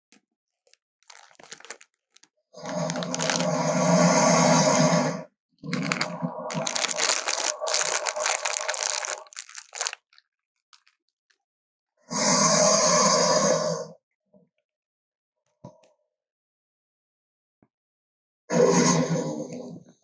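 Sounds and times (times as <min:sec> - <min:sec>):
crunching and tearing: 0:00.7 - 0:03.6, 0:05.7 - 0:11.0.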